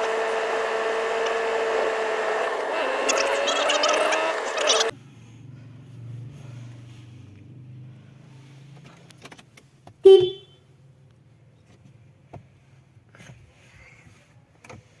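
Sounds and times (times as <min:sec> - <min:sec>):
vehicle engine humming: 0:00.0 - 0:08.9.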